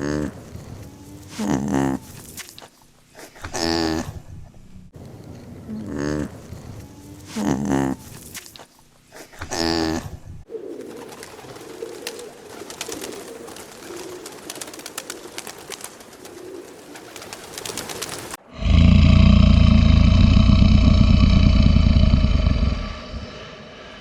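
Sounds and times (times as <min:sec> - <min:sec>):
birds cooing softly: 0:10.1 - 0:18.4.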